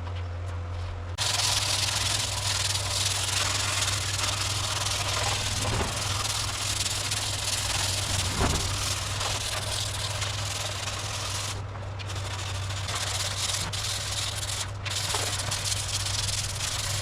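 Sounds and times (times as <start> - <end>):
steady low hum: 0.0 - 17.0
spray gun hissing: 1.2 - 11.6.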